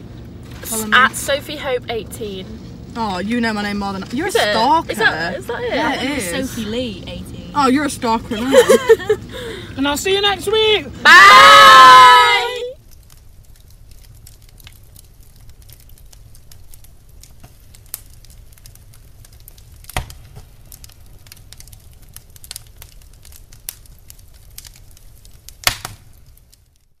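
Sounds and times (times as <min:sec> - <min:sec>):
car cabin low rumble: 0:00.0 - 0:11.1.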